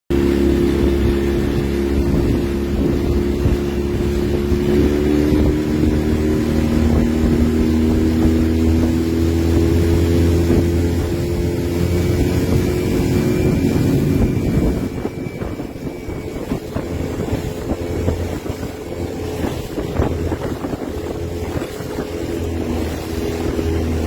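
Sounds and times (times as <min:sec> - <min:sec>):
boat engine running: 0:00.1 - 0:24.0.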